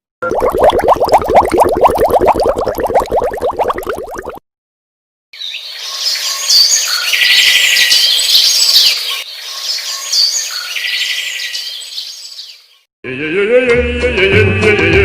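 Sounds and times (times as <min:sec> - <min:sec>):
birds chirping and trilling: 0:05.4 - 0:12.8.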